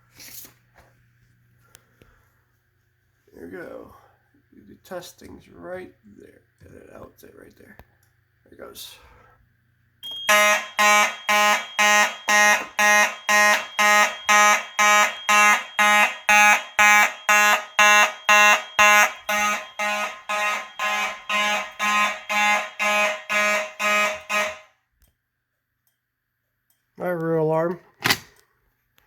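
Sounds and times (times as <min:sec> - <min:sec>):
fire alarm horns buzzing: 0:10.0 - 0:24.9.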